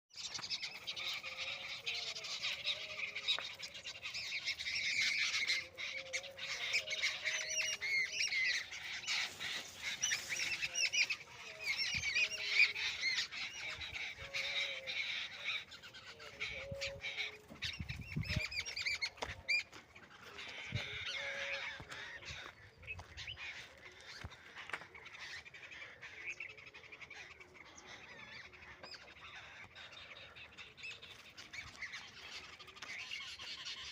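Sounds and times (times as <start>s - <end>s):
birds chirping and calling: 0.1s - 33.9s.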